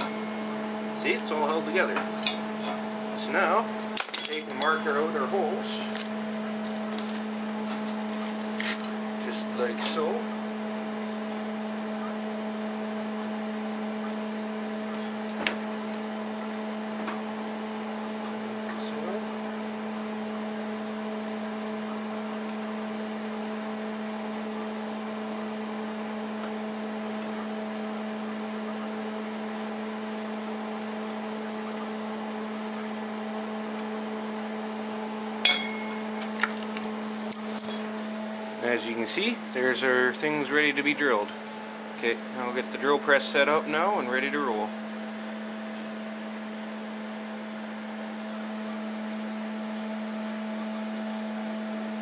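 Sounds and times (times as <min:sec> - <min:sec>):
machine hum: 0:00.0 - 0:52.0
steel clink ringing: 0:04.0 - 0:05.0, 0:35.4 - 0:36.2.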